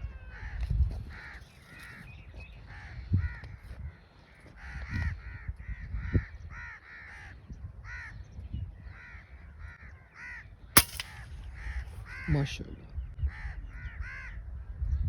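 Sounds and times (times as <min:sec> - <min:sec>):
crows cawing: 0:00.2 - 0:02.0, 0:02.6 - 0:08.2, 0:08.9 - 0:12.5, 0:13.3 - 0:14.4
air rifle shot: 0:10.8 - 0:11.8.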